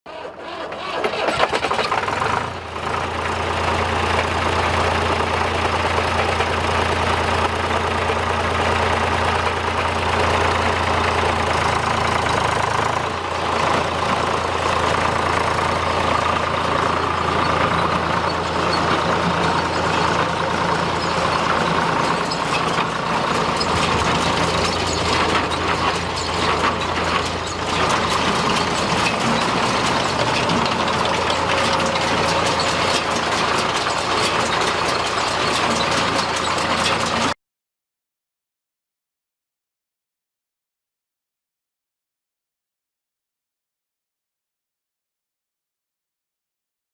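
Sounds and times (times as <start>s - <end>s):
diesel engine running: 0.1s - 37.4s.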